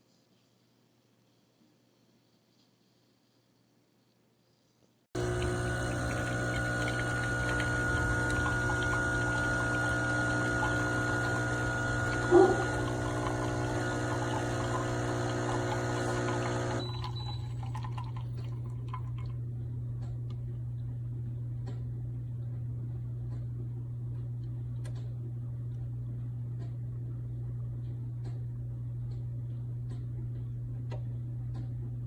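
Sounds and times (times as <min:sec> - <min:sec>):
espresso machine pump: 0:05.2 - 0:19.0
coffee pouring: 0:05.2 - 0:19.4
low steady hum: 0:05.2 - 0:32.0.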